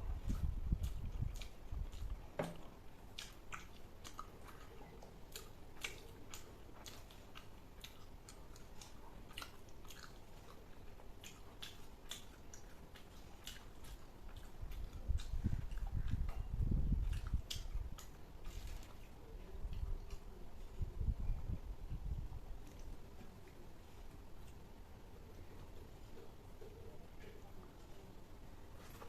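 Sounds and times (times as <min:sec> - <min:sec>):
person chewing food: 0:00.2 - 0:20.4
wet mouth clicks: 0:11.2 - 0:18.9.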